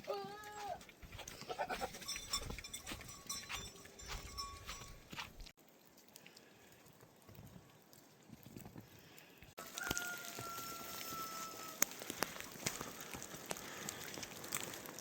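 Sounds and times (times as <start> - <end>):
sheep bleating: 1.5 - 2.1.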